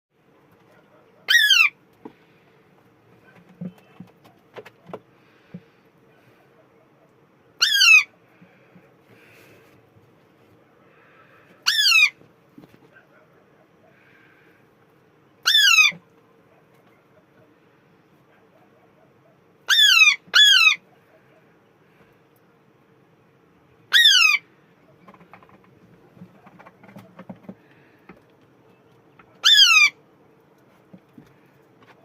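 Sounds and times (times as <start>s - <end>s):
parrot squawking: 1.2s - 1.8s, 7.6s - 8.1s, 11.6s - 12.2s, 15.4s - 16.0s, 19.6s - 20.8s, 23.9s - 24.4s, 29.4s - 30.0s.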